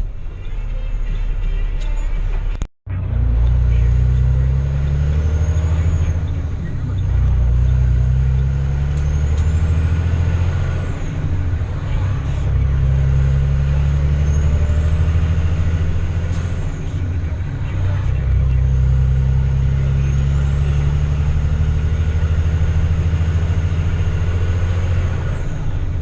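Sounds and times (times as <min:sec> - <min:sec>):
vehicle engine running: 0:00.0 - 0:26.0.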